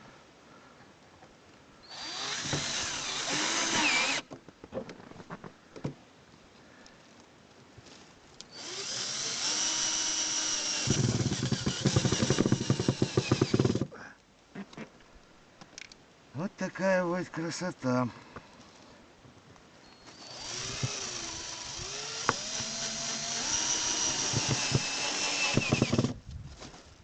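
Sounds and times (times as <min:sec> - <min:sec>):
power drill running: 0:01.9 - 0:04.2, 0:08.6 - 0:13.9, 0:20.1 - 0:26.2
fast rattle: 0:10.3 - 0:13.9.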